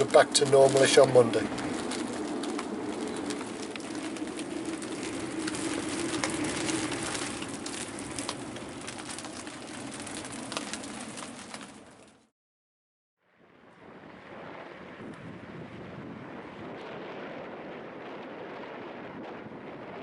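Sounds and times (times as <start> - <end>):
rain hissing: 0.0 - 12.1
low moan of wind: 0.0 - 12.2, 13.4 - 20.0
rain tapping on a boat: 0.0 - 12.2.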